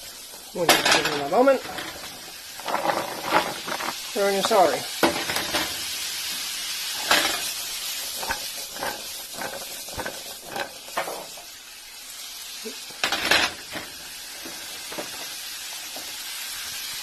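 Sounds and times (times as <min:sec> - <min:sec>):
vegetables sizzling in hot oil: 0:00.0 - 0:17.0
utensil scraping a pan: 0:00.1 - 0:05.9, 0:06.9 - 0:11.5.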